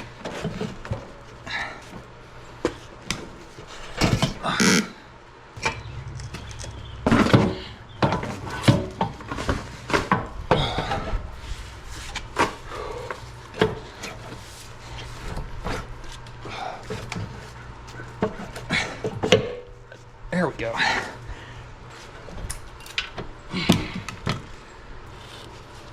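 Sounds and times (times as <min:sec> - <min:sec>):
steady low hum: 0:00.0 - 0:25.9
tools and metal parts clanking: 0:03.1 - 0:04.8, 0:05.6 - 0:20.0.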